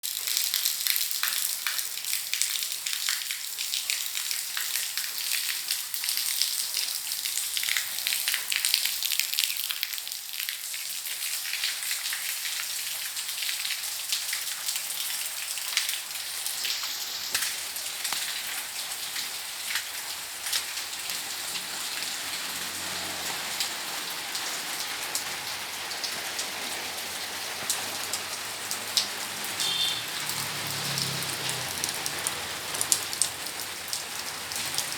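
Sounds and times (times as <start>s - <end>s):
rain falling: 0.0s - 34.9s
raindrops ticking: 15.7s - 34.9s.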